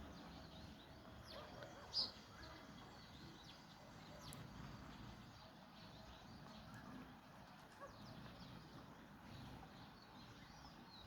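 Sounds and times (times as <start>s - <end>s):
sparrows chirping: 0.1s - 2.2s.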